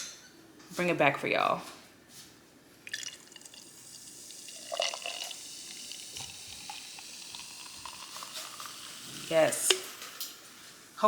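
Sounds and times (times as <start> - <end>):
cola pouring and fizzing: 2.9 - 10.2.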